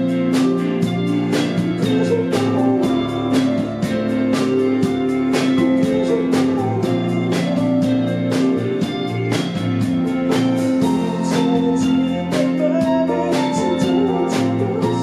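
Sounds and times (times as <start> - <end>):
drums beat: 0.0 - 15.0
guitar: 0.0 - 15.0.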